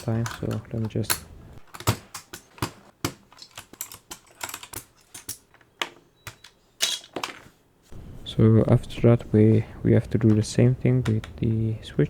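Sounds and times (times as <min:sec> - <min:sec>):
keycaps clicking off keyboard: 0:00.0 - 0:05.6.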